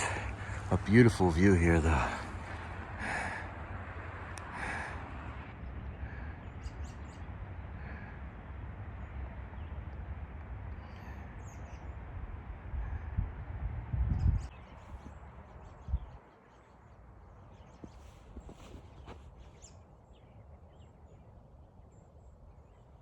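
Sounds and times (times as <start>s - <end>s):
faint bird chirps: 5.5s - 12.1s, 14.1s - 23.0s.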